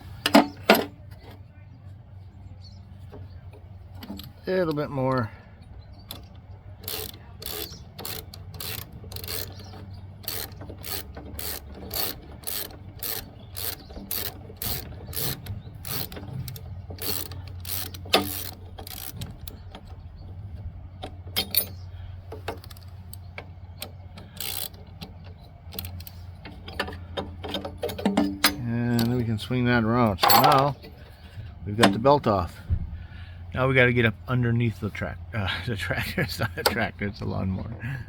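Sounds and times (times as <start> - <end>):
ratchet wrench clicking: 6.1 - 19.7, 22.4 - 23.2, 23.8 - 29.2
sharp metallic clank: 30.2 - 30.7.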